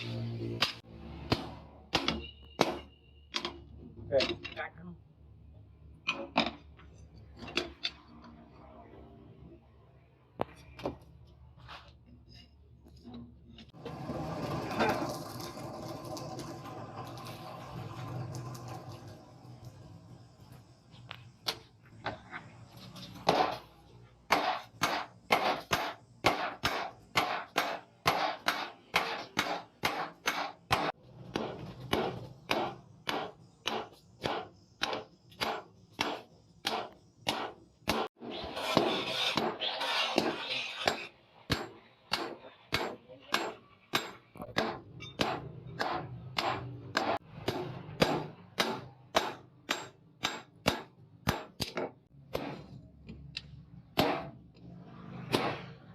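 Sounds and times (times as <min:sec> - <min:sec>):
hammer striking steel: 0:00.6 - 0:03.6, 0:24.3 - 0:52.8, 0:54.0 - 0:54.4, 0:55.2 - 0:55.7.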